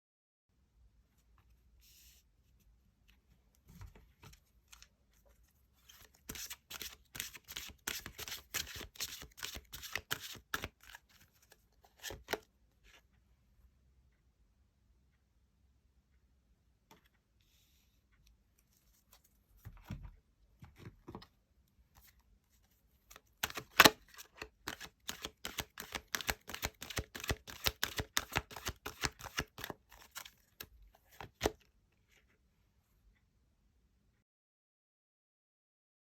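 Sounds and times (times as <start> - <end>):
soft card handling: 3.1 - 13.0, 21.9 - 31.6
cards being shuffled by hand: 5.8 - 12.4, 23.3 - 31.6.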